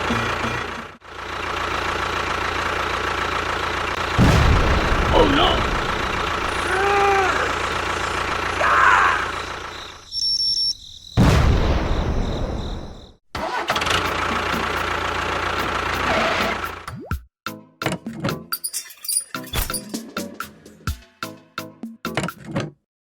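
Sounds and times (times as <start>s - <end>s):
engine-like running noise: 0.0s - 10.1s, 13.5s - 16.9s.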